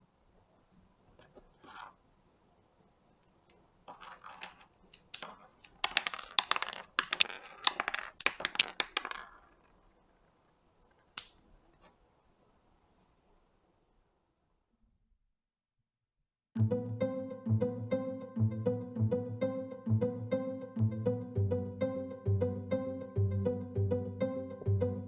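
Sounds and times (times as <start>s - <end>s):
toy pistol clicks and rattles: 4.9s - 8.9s.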